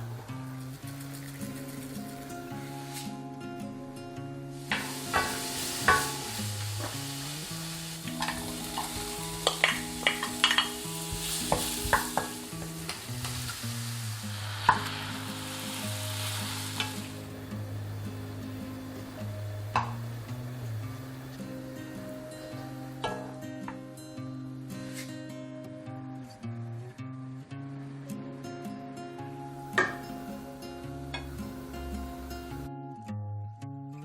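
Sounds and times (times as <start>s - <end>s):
food sizzling in a pan: 0.0s - 3.3s, 4.5s - 25.1s, 29.4s - 32.7s
background music: 0.0s - 34.0s
utensil scraping a pan: 4.7s - 13.6s.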